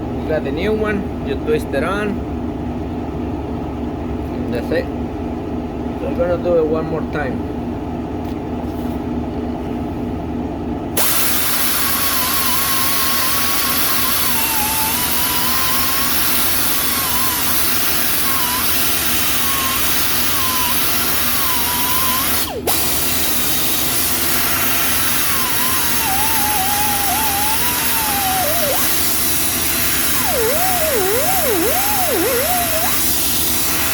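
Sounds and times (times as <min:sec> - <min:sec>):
power tool disc whining on metal: 0:11.0 - 0:33.9.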